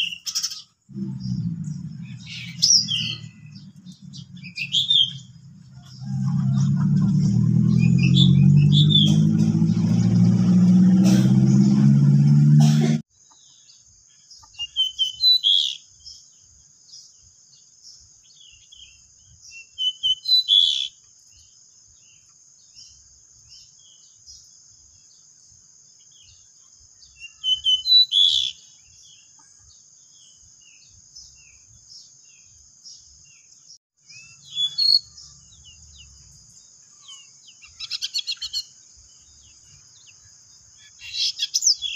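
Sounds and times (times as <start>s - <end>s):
birds chirping song: 0.0s - 11.8s, 13.1s - 41.9s
loud low hum: 0.9s - 13.0s.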